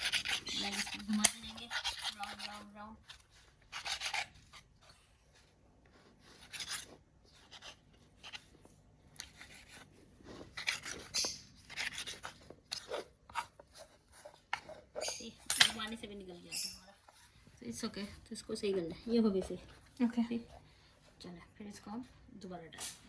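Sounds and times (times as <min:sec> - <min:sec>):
dough scraping around bowl: 0:00.0 - 0:23.0.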